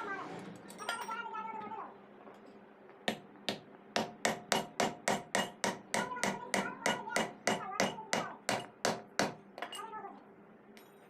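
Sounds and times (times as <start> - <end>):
hammer striking metal: 3.1 - 9.4.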